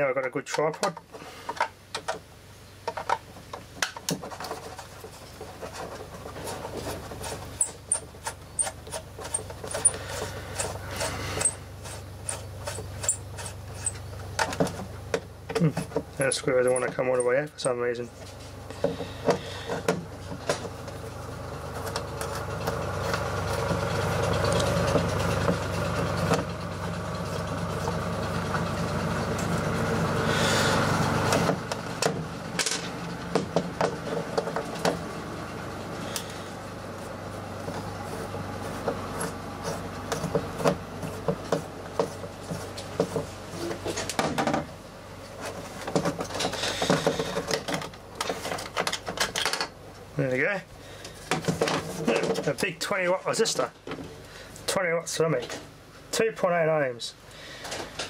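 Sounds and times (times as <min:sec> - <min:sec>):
small electric motor running: 0:23.0 - 0:31.4
plastic parts clicking and knocking: 0:45.8 - 0:49.8.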